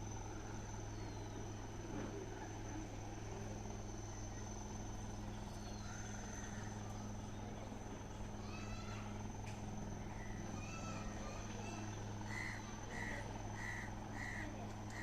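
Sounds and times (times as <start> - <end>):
constant low hum: 0.0 - 15.0
high-pitched insect trill: 8.4 - 15.0.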